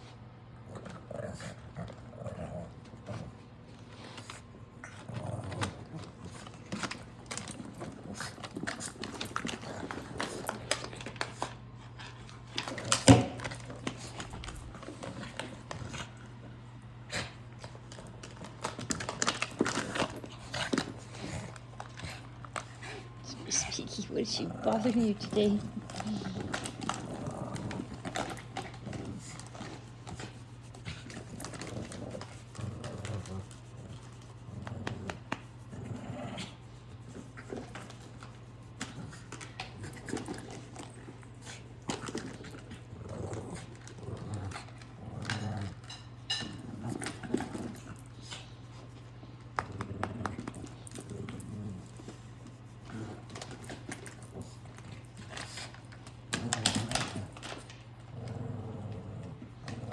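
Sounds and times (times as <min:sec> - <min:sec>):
puppy growling and grunting: 0:00.6 - 0:03.4, 0:04.8 - 0:10.6, 0:22.8 - 0:29.9, 0:31.0 - 0:36.7, 0:39.8 - 0:46.0, 0:49.6 - 0:52.1, 0:56.3 - 0:59.9.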